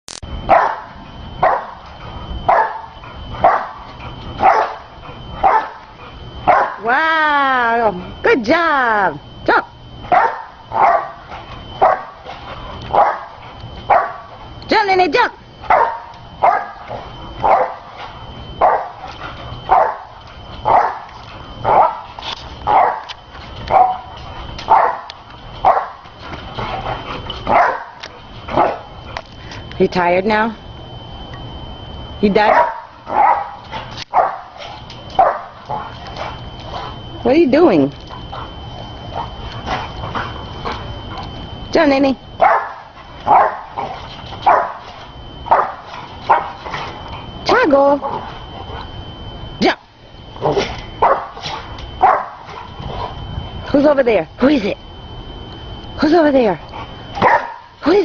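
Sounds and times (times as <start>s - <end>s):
dog barking: 0.5s - 1.8s, 2.5s - 3.8s, 4.4s - 5.8s, 6.4s - 6.8s, 10.1s - 11.2s, 11.8s - 12.2s, 12.9s - 14.3s, 15.7s - 16.8s, 17.4s - 17.9s, 18.6s - 19.0s, 19.7s - 20.1s, 20.7s - 21.1s, 21.7s - 22.1s, 22.7s - 23.1s, 23.7s - 24.1s, 24.7s - 26.0s, 27.5s - 28.0s, 32.5s - 34.6s, 35.2s - 35.6s, 42.4s - 43.8s, 44.4s - 44.8s, 45.5s - 46.5s, 51.0s - 52.6s, 57.2s - 57.7s.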